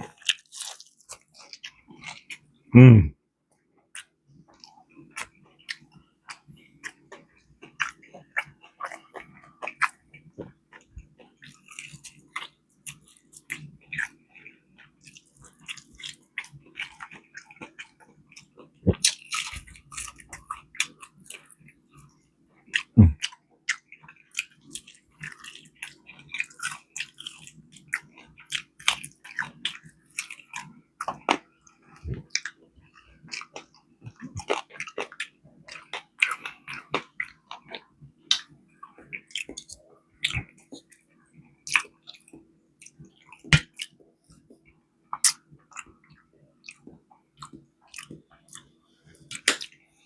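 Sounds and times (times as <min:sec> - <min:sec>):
wet crunchy chewing: 0:00.0 - 0:02.9, 0:04.0 - 0:21.6, 0:22.8 - 0:41.0, 0:45.2 - 0:49.8
faint low hum: 0:23.0 - 0:23.2.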